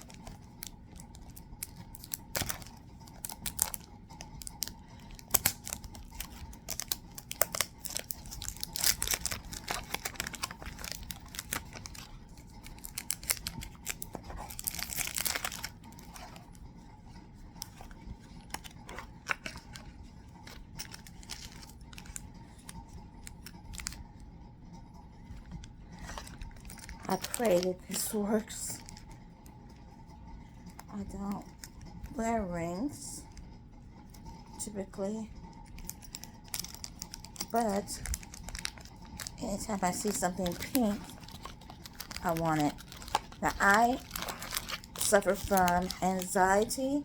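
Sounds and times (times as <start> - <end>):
packaging tearing: 0.0 - 16.5, 20.4 - 22.2, 26.0 - 27.7, 36.0 - 46.4
packaging crinkling: 0.0 - 24.1, 25.2 - 29.2, 35.5 - 47.0.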